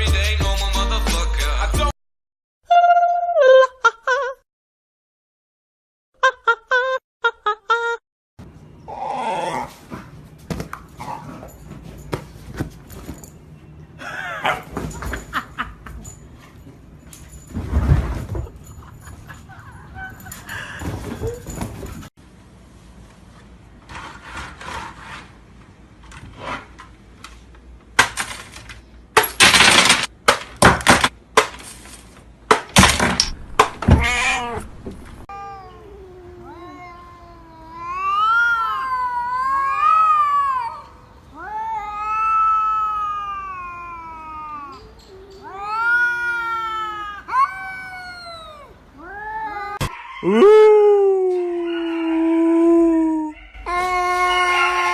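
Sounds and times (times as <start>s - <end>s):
noisy scuffs and knocks: 10.0s - 13.4s
cat yowling: 33.9s - 34.6s, 35.3s - 54.9s.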